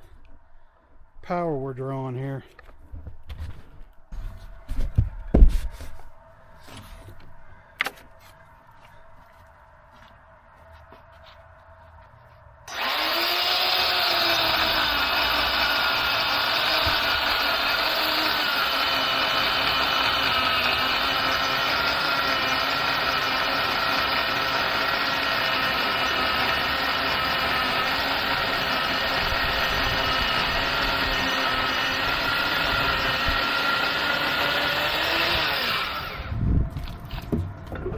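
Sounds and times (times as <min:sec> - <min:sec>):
electric chainsaw cutting wood: 0:12.7 - 0:37.5.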